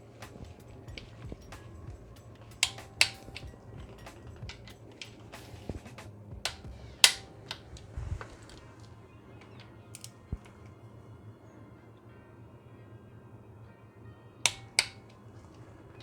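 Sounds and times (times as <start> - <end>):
metal tools clicking and clinking: 0.0 - 10.5, 14.5 - 16.0.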